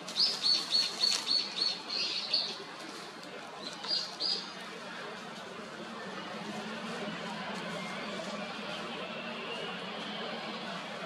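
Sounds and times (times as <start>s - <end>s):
small bird singing: 0.2s - 2.5s.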